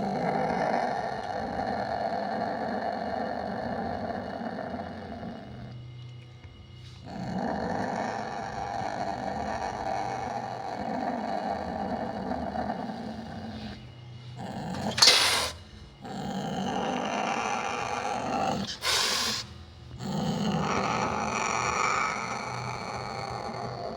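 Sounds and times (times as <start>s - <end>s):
wild cat growling: 0.0s - 6.2s, 6.8s - 23.9s
wild cat hissing: 6.7s - 23.9s.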